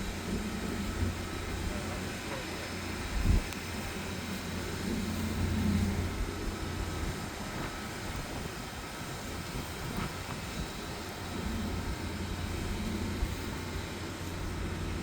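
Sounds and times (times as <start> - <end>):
sewer jetter running: 0.0 - 15.0.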